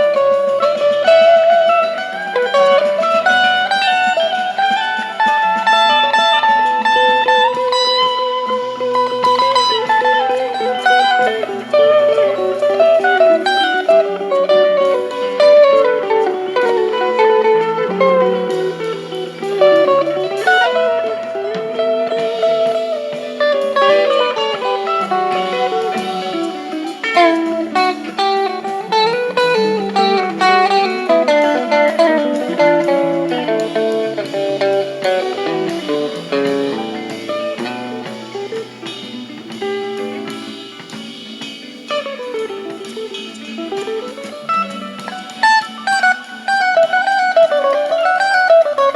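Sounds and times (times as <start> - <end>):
band backing track: 0.0 - 48.9
electric guitar wah lead: 0.0 - 48.9.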